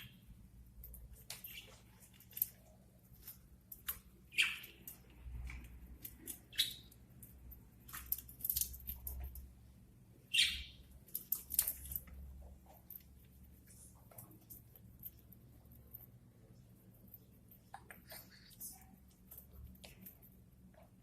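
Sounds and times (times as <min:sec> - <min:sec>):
budgerigars chirping: 0:10.3 - 0:10.8.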